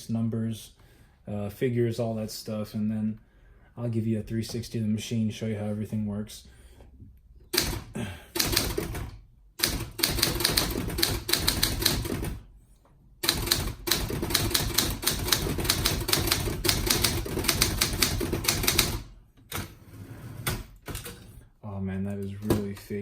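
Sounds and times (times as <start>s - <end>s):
manual typewriter typing: 7.6s - 12.4s, 13.2s - 19.7s.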